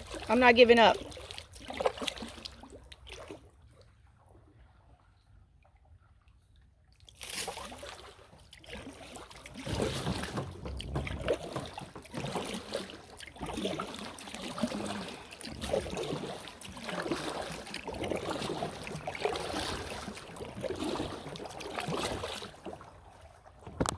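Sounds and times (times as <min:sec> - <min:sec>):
paddle strokes splashing in water: 0:00.0 - 0:23.9.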